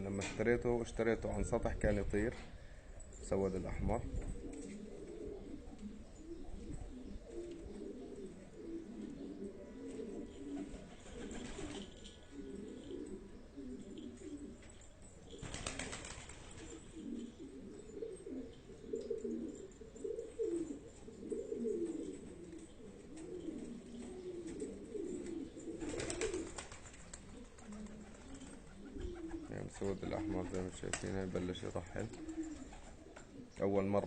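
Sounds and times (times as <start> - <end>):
pigeons cooing: 0.0 - 34.0
wings flapping: 10.5 - 12.0, 15.3 - 16.8, 25.2 - 31.3.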